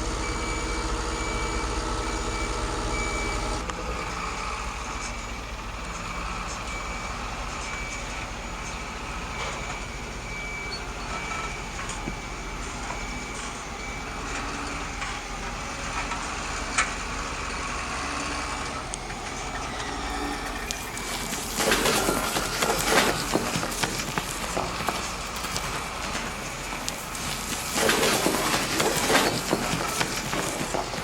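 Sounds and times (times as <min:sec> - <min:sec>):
electronic reversing beeper: 0:00.0 - 0:05.4, 0:06.0 - 0:15.4, 0:16.6 - 0:31.0
steady mechanical noise: 0:00.0 - 0:31.0.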